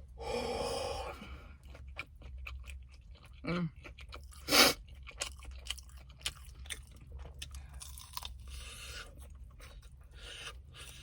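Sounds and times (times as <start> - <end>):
person chewing crispy food: 1.1 - 11.0.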